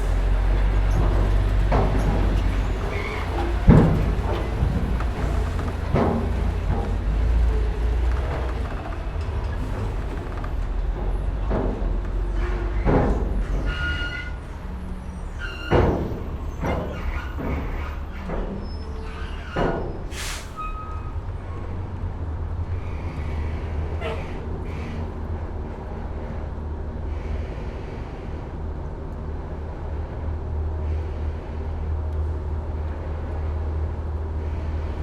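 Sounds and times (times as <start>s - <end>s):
heavy clunks and creaks: 0.0s - 26.6s
low engine rumble: 0.0s - 35.0s
brief hiss: 20.1s - 20.6s.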